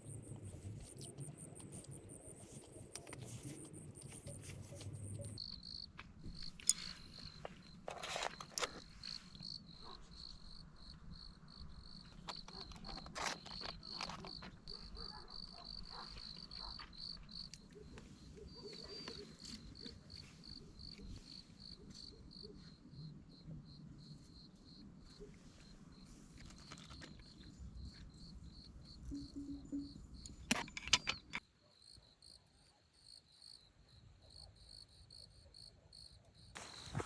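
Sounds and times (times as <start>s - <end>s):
crickets chirping: 0.0s - 37.0s
clicks and rustles: 6.0s - 9.1s, 12.0s - 15.0s.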